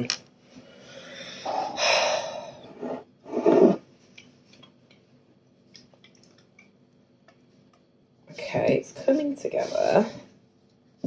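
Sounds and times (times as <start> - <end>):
dough scraping in a bowl: 2.8 - 3.8, 8.4 - 10.2.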